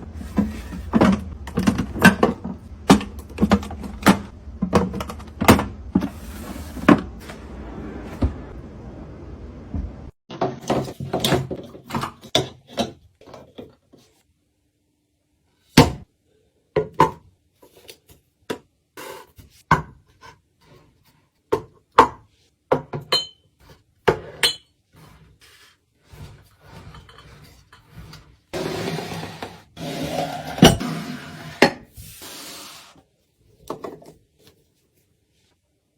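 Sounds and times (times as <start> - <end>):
containers knocking and clicking: 0.3 - 6.1.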